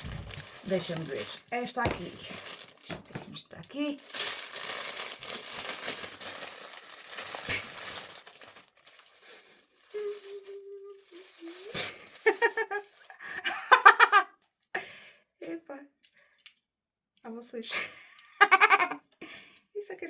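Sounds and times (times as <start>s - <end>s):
plastic packaging crinkling: 0.0s - 13.3s.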